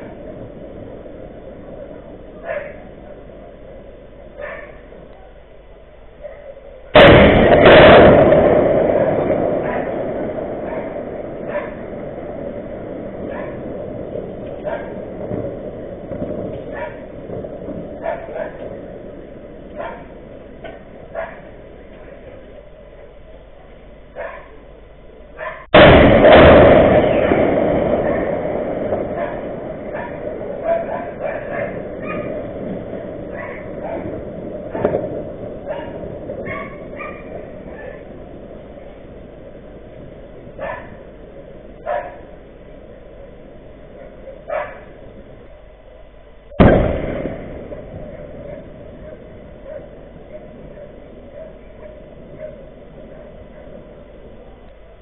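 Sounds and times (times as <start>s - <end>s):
rolling rumble: 0.0s - 55.0s
loud explosion blast: 7.0s - 20.9s, 25.7s - 41.6s, 46.5s - 51.4s
explosion crack: 7.0s - 22.1s, 25.7s - 44.0s, 46.5s - 54.3s.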